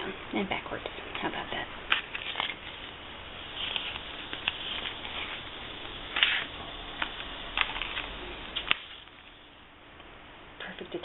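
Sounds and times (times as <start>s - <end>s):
paper pages rustling: 1.9s - 5.4s, 6.1s - 9.3s.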